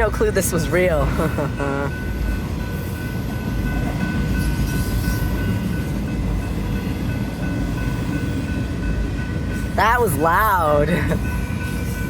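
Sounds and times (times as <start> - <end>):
freight train rumbling on rails: 0.0 - 12.0.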